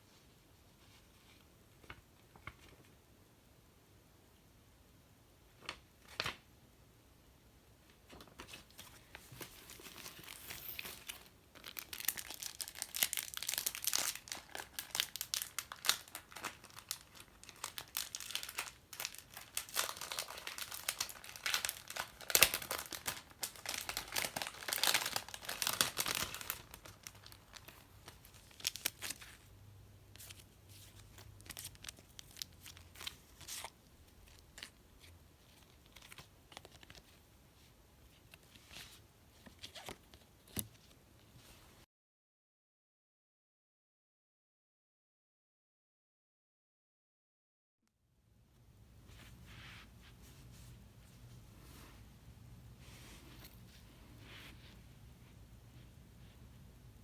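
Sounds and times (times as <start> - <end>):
packaging crinkling and tearing: 8.4 - 29.5, 30.1 - 37.2.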